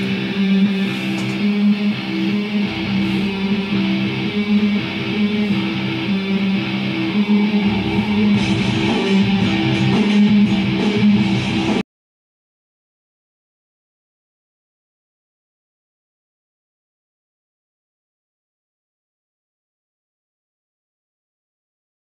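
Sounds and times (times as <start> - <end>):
bass line: 0.0 - 11.8
strummed electric guitar: 0.0 - 11.8.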